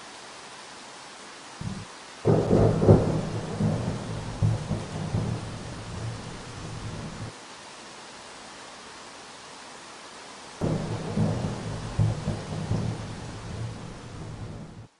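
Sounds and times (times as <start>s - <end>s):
steady rain hiss: 0.0s - 14.9s
thunder rumbling: 1.6s - 7.3s, 10.6s - 14.9s.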